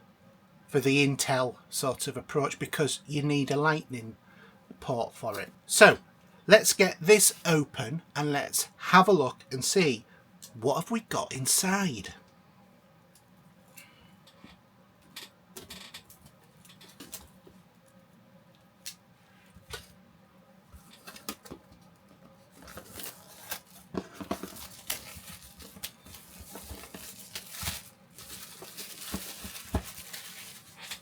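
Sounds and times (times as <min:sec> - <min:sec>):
packaging tearing and crinkling: 0:22.6 - 0:31.0.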